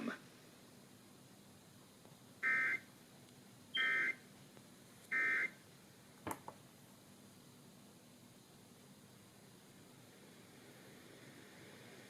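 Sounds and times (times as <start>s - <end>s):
two-tone digital data bursts: 2.4s - 2.8s, 3.8s - 4.2s, 5.1s - 5.5s.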